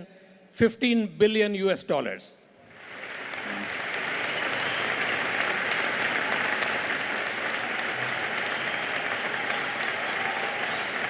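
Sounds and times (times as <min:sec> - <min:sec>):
audience applauding: 0:02.7 - 0:11.0.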